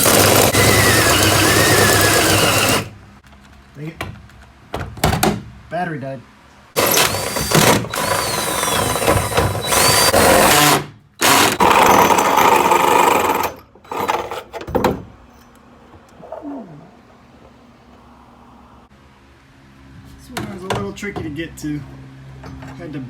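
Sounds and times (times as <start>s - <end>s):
power drill whining: 0.0s - 2.9s, 6.8s - 14.2s.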